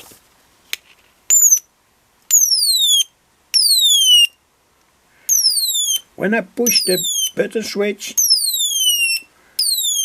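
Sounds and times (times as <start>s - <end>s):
electronic bird chirps: 1.3s - 1.6s, 2.3s - 4.4s, 5.3s - 6.1s, 6.7s - 7.4s, 8.2s - 10.0s.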